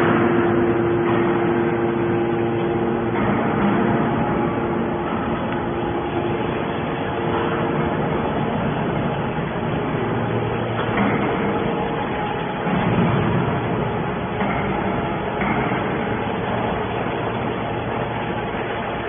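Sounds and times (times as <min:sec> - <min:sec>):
scrap metal baler drone: 0:00.0 - 0:19.0.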